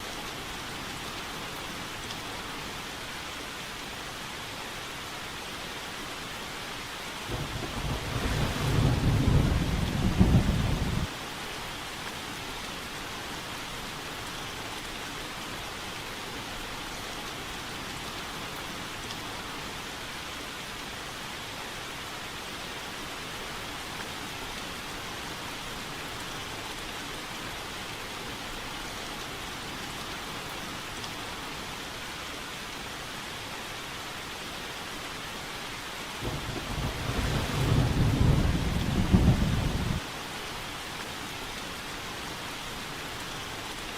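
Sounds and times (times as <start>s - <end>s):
rain on a window pane: 0.0s - 43.9s
thunder rolling: 7.3s - 11.1s, 36.2s - 40.0s.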